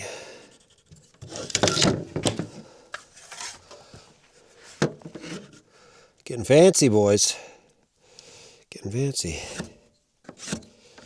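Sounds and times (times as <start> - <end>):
wooden boards scraping and sliding: 1.2 - 3.6, 9.4 - 10.7.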